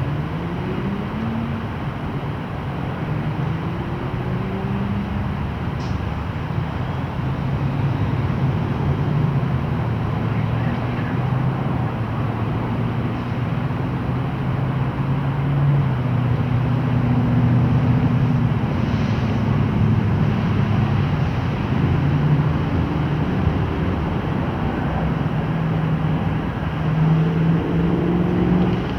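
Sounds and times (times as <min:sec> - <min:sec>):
jet engines in flight: 0:17.7 - 0:28.9.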